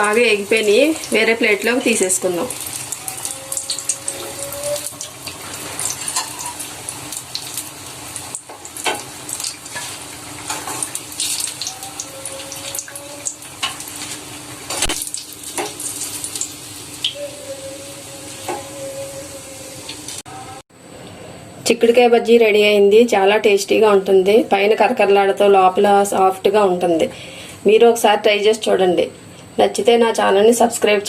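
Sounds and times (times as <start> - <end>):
food deep-frying in oil: 0.0 - 20.6.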